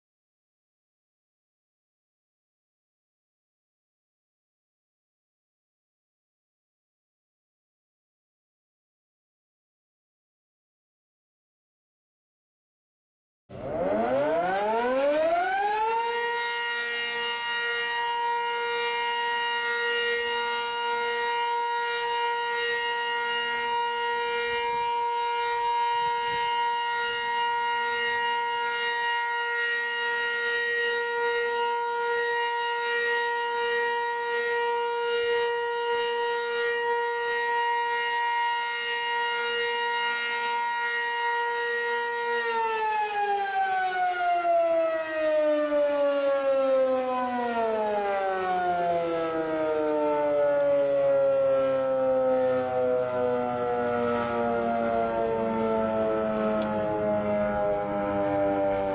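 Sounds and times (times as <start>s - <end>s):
civil defense siren: 13.5s - 58.9s.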